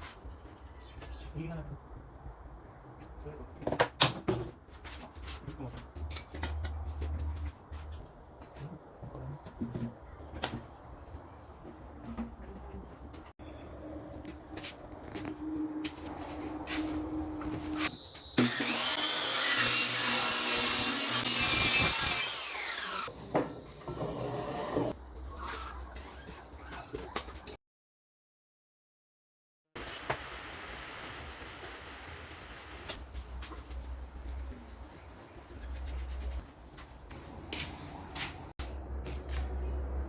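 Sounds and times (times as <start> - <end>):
power tool on wood: 18.4 - 23.1.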